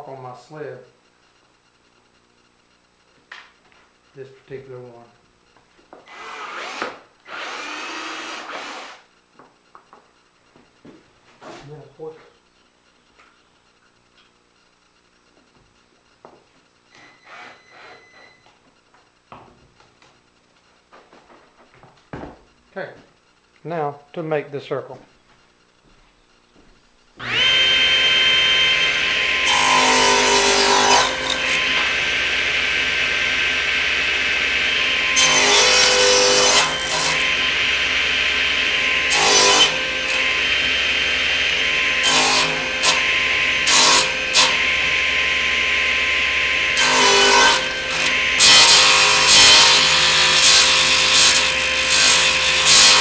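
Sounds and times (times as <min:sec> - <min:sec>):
table saw whining: 0:06.0 - 0:09.1, 0:16.9 - 0:18.5, 0:27.2 - 0:53.0
saw blade cutting wood: 0:06.1 - 0:09.0, 0:27.2 - 0:53.0.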